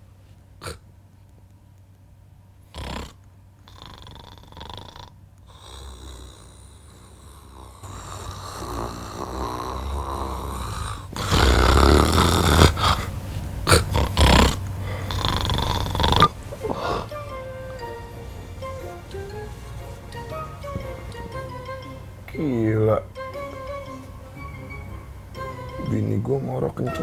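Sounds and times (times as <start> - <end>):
man snoring: 2.7 - 17.2.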